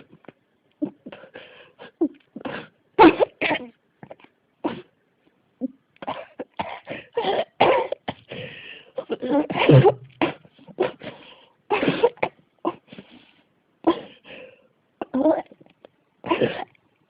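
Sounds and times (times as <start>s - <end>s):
person coughing: 9.4s - 11.0s, 16.3s - 16.8s.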